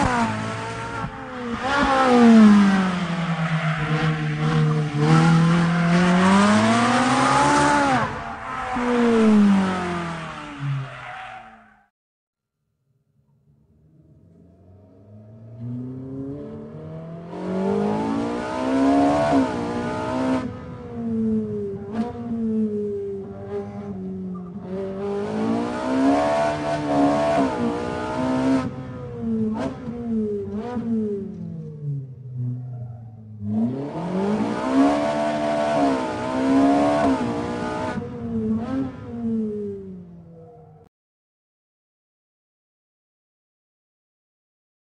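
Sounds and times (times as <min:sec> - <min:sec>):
sports car accelerating: 0:00.0 - 0:10.8, 0:13.5 - 0:40.4
car engine revving hard: 0:03.9 - 0:08.1, 0:33.5 - 0:38.0.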